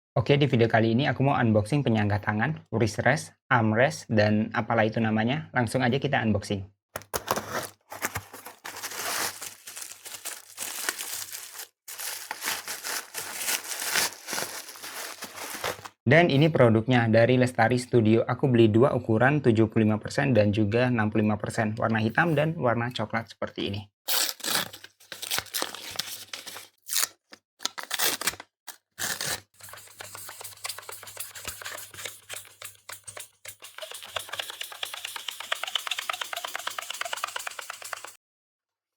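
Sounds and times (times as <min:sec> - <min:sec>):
packaging crinkling and tearing: 0:07.0 - 0:15.9, 0:24.1 - 0:29.5.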